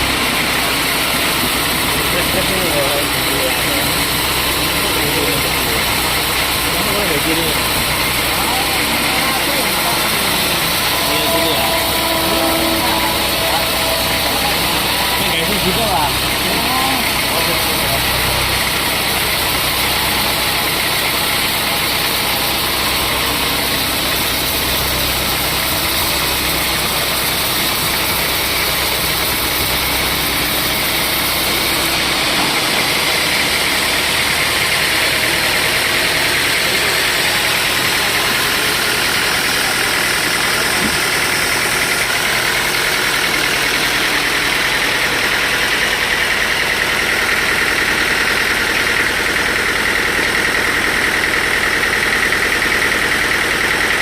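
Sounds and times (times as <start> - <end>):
sawmill machinery running: 0.0 - 54.0
low hum: 7.3 - 26.0.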